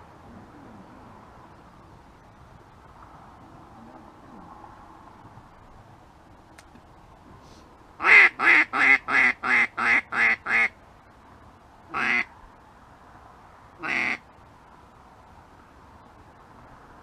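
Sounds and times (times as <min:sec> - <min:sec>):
duck quacking loudly: 0:08.0 - 0:10.7, 0:11.9 - 0:12.3, 0:13.8 - 0:14.2.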